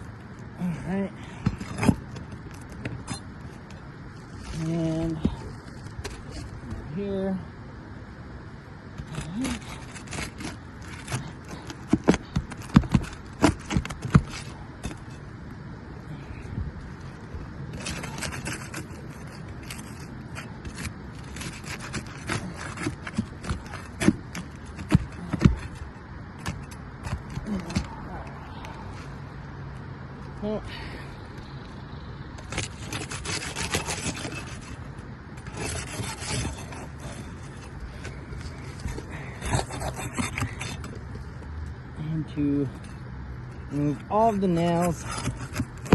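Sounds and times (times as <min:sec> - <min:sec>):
light scraping and ticking: 0:01.2 - 0:06.8, 0:08.9 - 0:30.4, 0:31.2 - 0:45.9.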